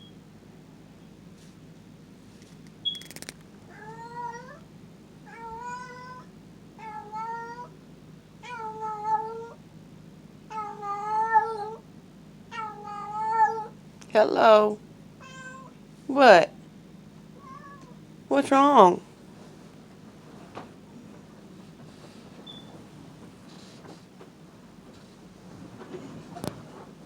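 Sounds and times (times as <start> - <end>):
sharp click: 2.4 - 3.5
cat meowing: 3.7 - 4.6, 5.3 - 7.7, 10.5 - 11.8, 12.5 - 13.8, 15.2 - 15.8, 17.4 - 18.0.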